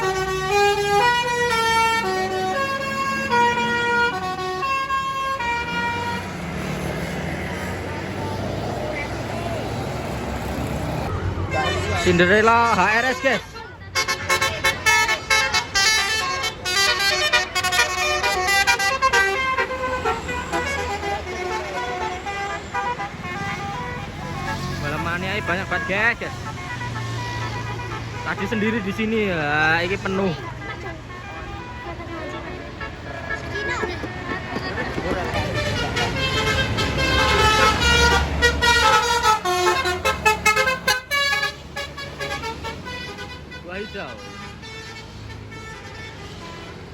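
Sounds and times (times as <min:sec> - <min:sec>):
multi-tone bus horn melody: 0:00.0 - 0:11.8, 0:12.6 - 0:46.9
bus engine rumble: 0:00.0 - 0:43.6
musical air horn tune: 0:35.4 - 0:43.4.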